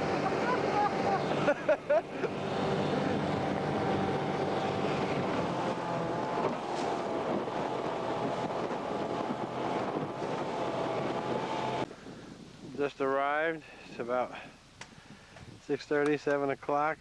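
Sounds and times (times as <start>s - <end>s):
engine running with faint whine: 0.0s - 11.9s
low hum: 0.0s - 11.9s
wind buffeting microphone: 0.0s - 13.1s.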